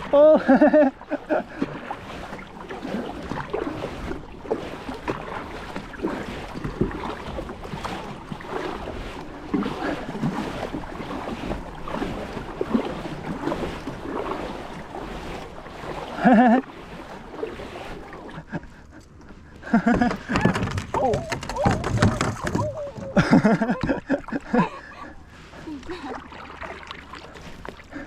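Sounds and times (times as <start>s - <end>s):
water sloshing around kayak: 0.0s - 28.0s
handling knocks: 19.9s - 23.2s.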